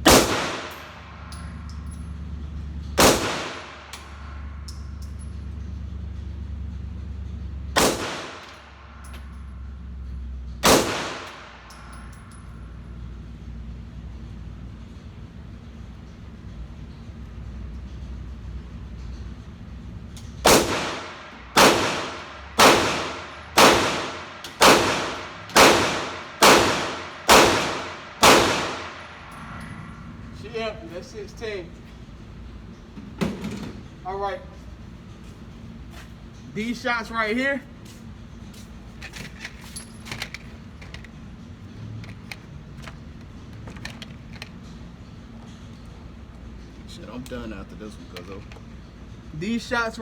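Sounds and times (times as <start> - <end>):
pistol shots: 0.0 - 1.6, 3.0 - 4.3, 7.8 - 8.6, 10.6 - 12.0, 20.4 - 29.4
steady low hum: 0.0 - 50.0.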